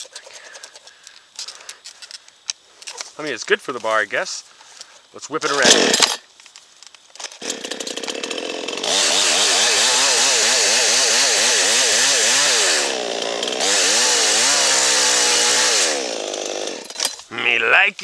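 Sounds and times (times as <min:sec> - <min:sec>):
chainsaw revving: 0:05.5 - 0:06.2, 0:07.4 - 0:17.0.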